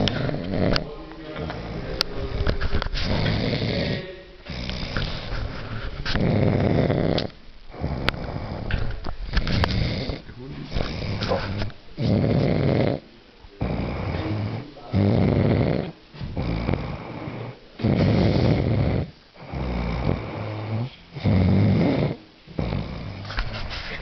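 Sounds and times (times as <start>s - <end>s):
person snoring: 0.0s - 23.4s
quiet breath out: 13.6s - 14.8s.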